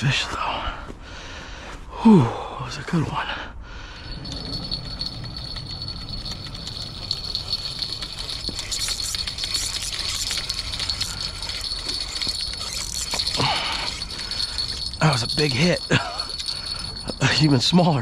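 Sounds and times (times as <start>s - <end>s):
bite bell jingling: 3.9s - 18.0s.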